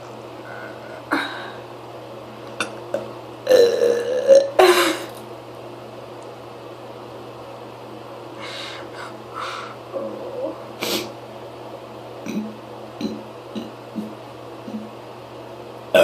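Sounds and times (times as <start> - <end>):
steady low hum: 0.0 - 16.0
person breathing: 0.4 - 1.6, 8.4 - 9.8
sharp sniff: 10.8 - 11.1
quiet throat sounds: 12.3 - 14.9.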